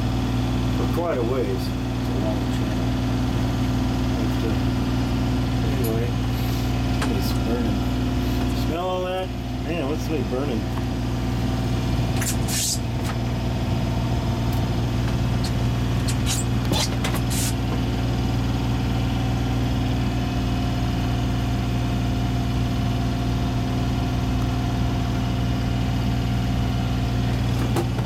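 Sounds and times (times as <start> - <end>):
boat engine humming: 0.0 - 28.0.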